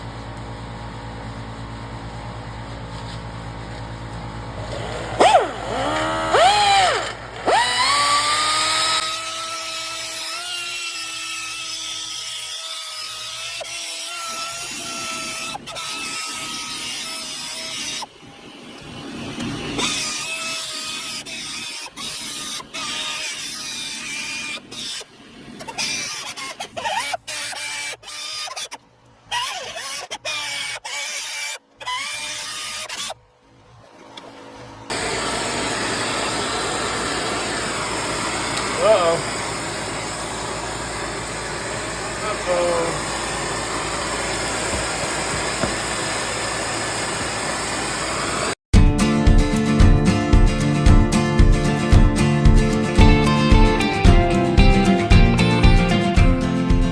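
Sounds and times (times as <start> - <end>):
power tool motor revving: 4.5 - 33.2, 34.8 - 48.6.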